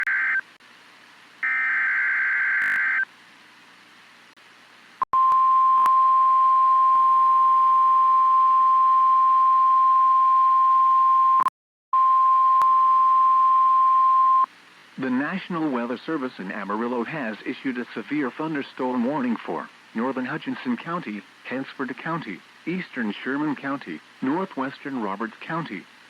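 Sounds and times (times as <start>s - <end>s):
buzzing data burst: 1.4s - 3.0s.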